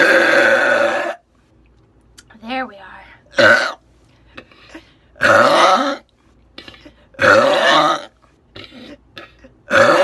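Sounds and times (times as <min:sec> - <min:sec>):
woman burping: 0:04.4 - 0:06.0, 0:06.6 - 0:10.0.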